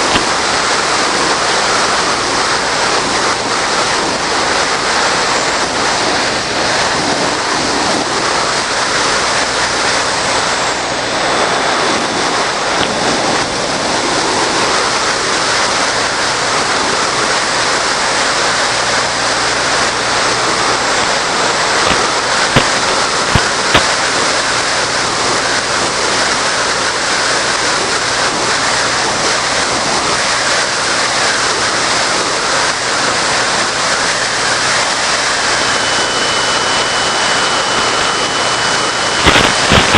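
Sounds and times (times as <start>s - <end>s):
steady rushing noise: 0.0s - 39.9s
sharp clicks: 39.2s - 39.9s.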